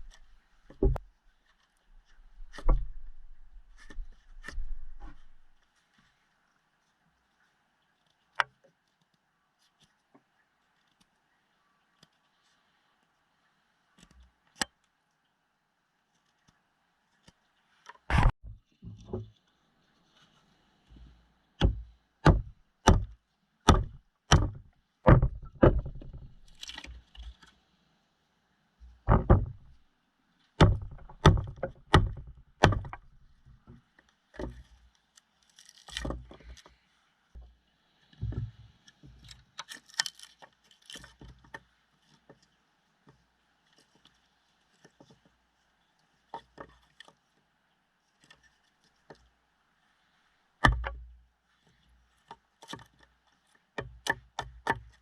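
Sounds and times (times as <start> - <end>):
knife striking wood: 21.6 - 26.9, 29.1 - 29.7, 30.6 - 33.2, 50.6 - 51.0.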